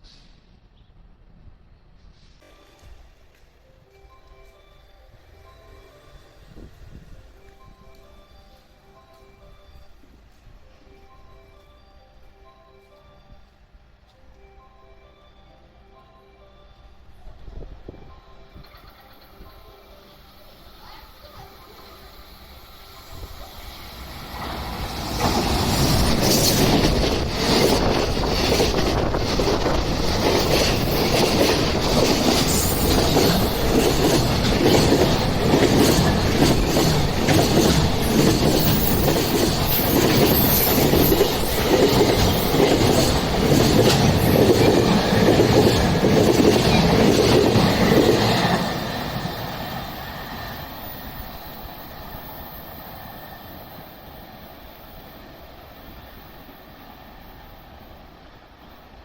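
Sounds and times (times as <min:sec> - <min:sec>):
train wheels clattering on rails: 0:23.3 - 0:54.4.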